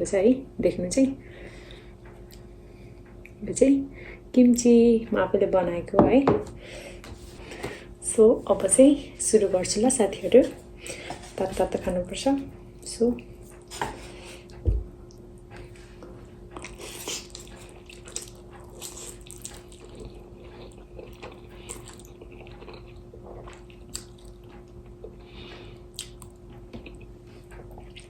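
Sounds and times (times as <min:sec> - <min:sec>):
faint steady hum: 0:00.0 - 0:28.0
person slurping and chewing noodles: 0:16.6 - 0:24.4.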